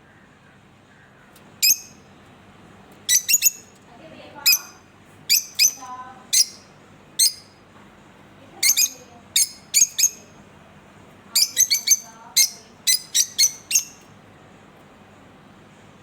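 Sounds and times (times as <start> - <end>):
lovebirds chirping: 1.6 - 2.0, 3.1 - 3.7, 4.4 - 7.5, 8.5 - 10.4, 11.3 - 14.1.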